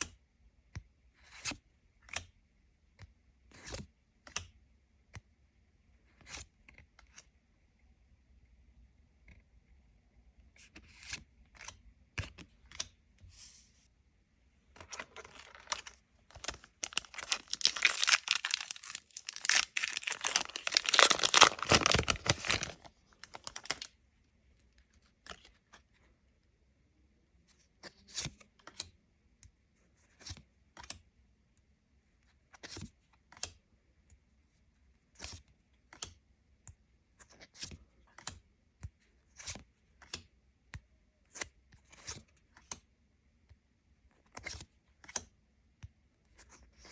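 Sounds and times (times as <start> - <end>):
cards flicked and slid: 10.7 - 13.6, 44.2 - 45.3
wrapper tearing and crinkling: 15.0 - 23.9.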